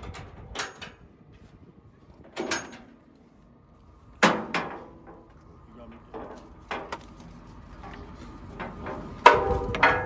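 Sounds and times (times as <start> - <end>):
clunks and scrapes: 4.2 - 10.0.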